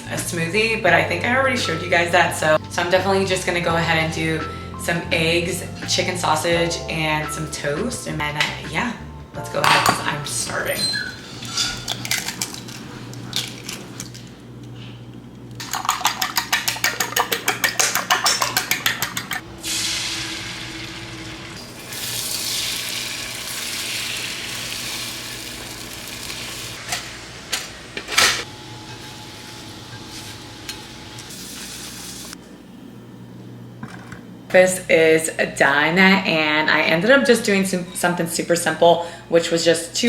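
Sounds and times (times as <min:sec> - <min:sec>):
utensil clinking against a bowl: 0:15.6 - 0:19.4
frying hiss: 0:19.6 - 0:27.1, 0:28.9 - 0:32.4.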